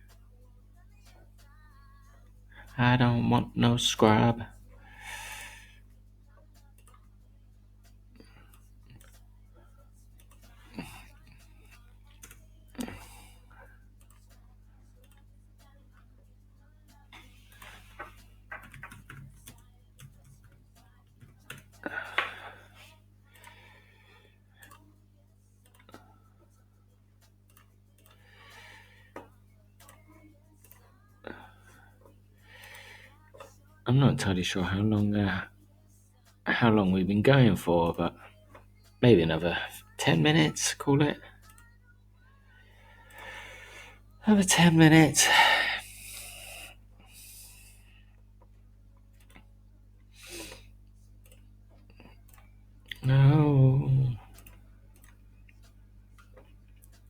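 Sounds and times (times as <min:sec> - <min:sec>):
steady low hum: 0:00.0 - 0:57.0
faint clicks: 0:05.4 - 0:22.6.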